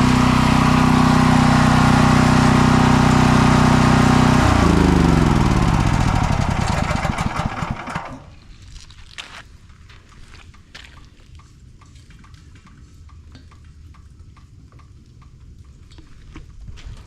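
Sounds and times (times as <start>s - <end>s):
generator engine running and winding down: 0.0s - 8.4s.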